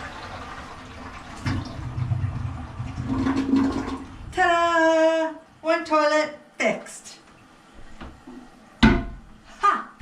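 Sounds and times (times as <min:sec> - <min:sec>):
toilet flushing: 0:00.0 - 0:04.4.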